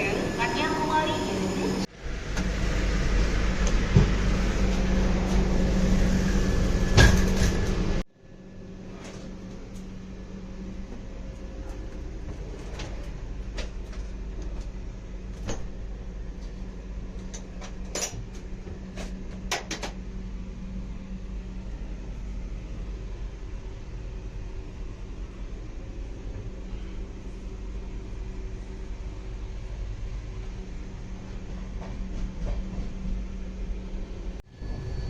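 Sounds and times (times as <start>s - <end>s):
train running noise: 0.0s - 8.0s, 27.3s - 35.0s.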